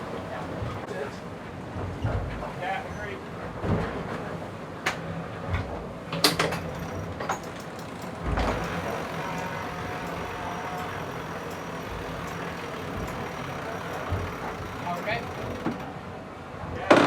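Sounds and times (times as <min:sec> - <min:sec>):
hum and rushing noise on sailboat: 0:00.0 - 0:17.0
sharp knocks: 0:06.3 - 0:15.9.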